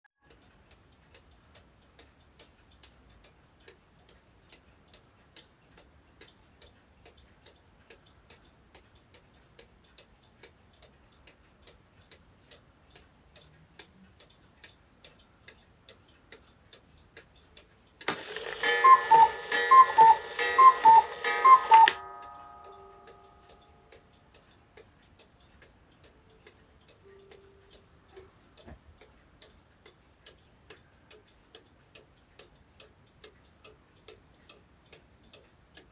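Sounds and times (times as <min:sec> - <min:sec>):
clock ticking: 0:00.2 - 0:35.9
cuckoo clock calling: 0:18.0 - 0:24.0.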